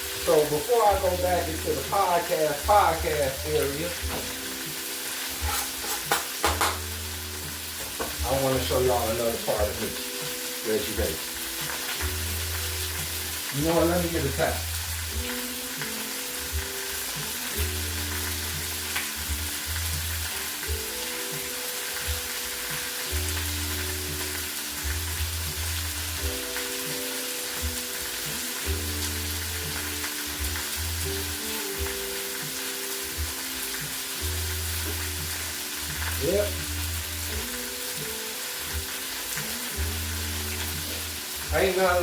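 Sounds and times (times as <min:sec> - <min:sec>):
food sizzling in a frying pan: 0:00.0 - 0:42.0.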